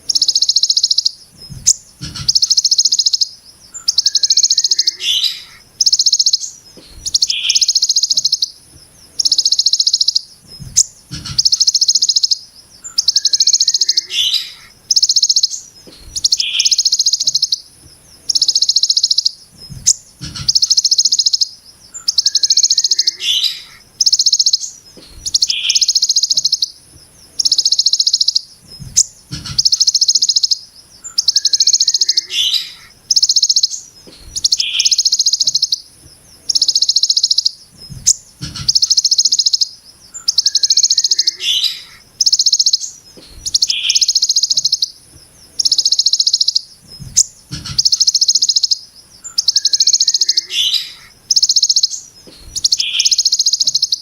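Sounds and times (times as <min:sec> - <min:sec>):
bird buzzy song bursts: 0:00.0 - 0:54.0
bird chirps: 0:00.0 - 0:54.0
dull low knocks: 0:01.4 - 0:02.5, 0:10.4 - 0:11.5, 0:19.5 - 0:20.7, 0:28.6 - 0:29.7, 0:37.7 - 0:38.9, 0:46.8 - 0:47.9.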